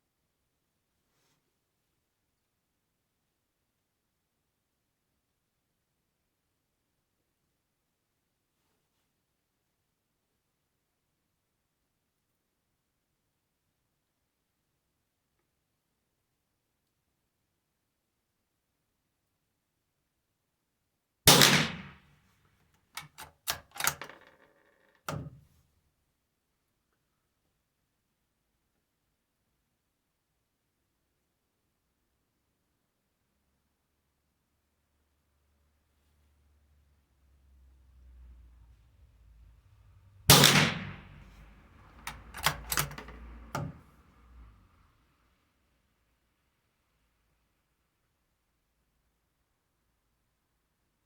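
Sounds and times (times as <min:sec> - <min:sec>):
rifle bolt metallic clicks: 0:21.3 - 0:22.0, 0:23.0 - 0:24.2, 0:42.0 - 0:43.8
rifle shot: 0:21.3 - 0:22.1, 0:40.3 - 0:41.4.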